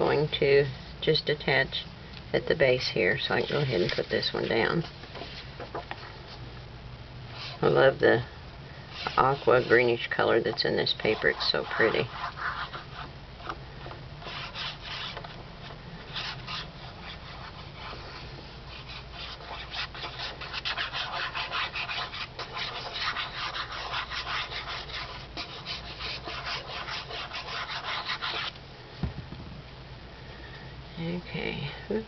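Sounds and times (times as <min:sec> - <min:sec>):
hand rubbing over paper: 0:08.9 - 0:10.1.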